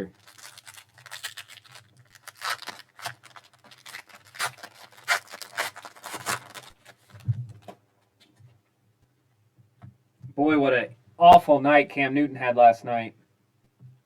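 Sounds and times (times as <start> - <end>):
trading cards rustling: 0.0 - 7.3.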